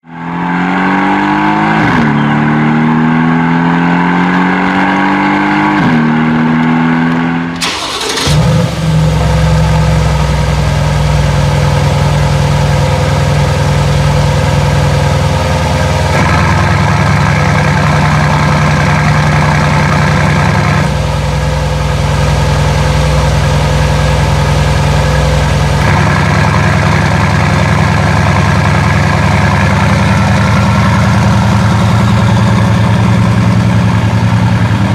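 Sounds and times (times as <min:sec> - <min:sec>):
car engine starting and idling: 0:06.5 - 0:34.9
repeating rising tone: 0:22.1 - 0:34.6.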